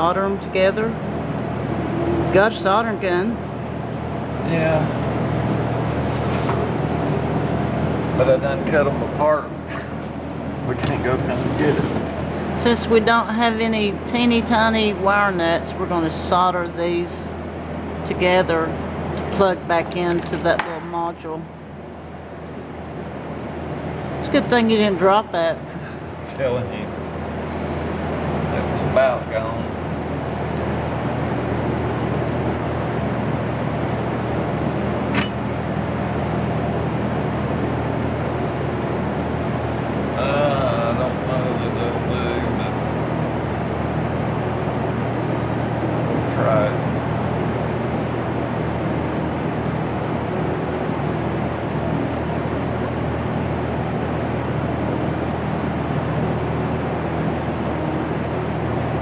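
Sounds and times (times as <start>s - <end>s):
machine hum with hiss: 22.1s - 59.0s.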